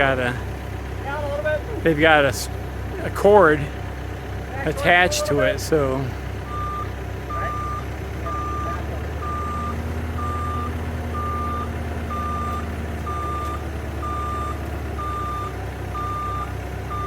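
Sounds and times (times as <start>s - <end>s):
engine rumble: 0.0s - 17.0s
backup alarm beeping: 6.5s - 17.0s.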